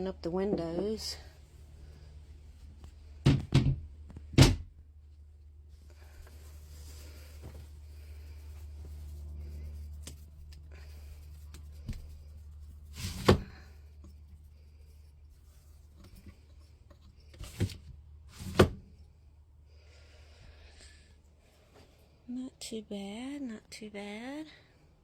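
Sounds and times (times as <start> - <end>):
low steady hum: 0.0 - 25.0
window sashes scraping and knocking: 12.9 - 13.6.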